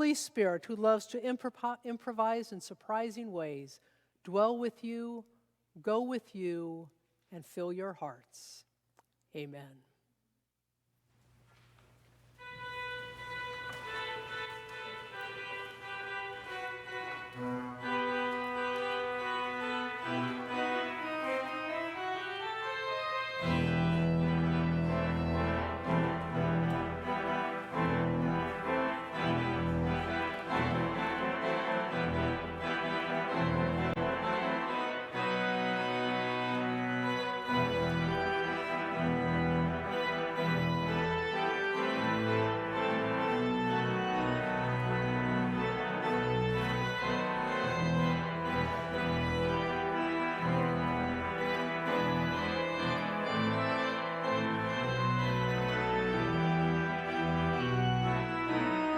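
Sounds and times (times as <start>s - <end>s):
church organ chords: 12.4s - 58.9s
deep organ bass notes: 19.1s - 58.9s.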